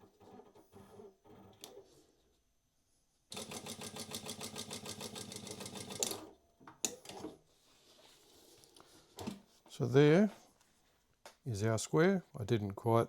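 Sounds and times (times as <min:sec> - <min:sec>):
sewing machine stitching: 0:03.3 - 0:06.3.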